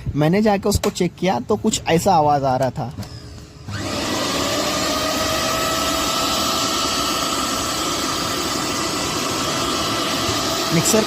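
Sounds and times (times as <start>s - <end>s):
mixer grinder motor whining: 3.0s - 11.0s.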